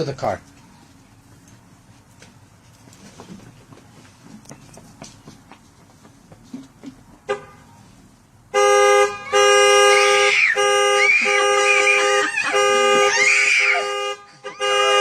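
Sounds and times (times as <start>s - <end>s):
car horn blaring: 7.2s - 7.8s, 8.5s - 15.0s
horn chirp: 8.6s - 15.0s.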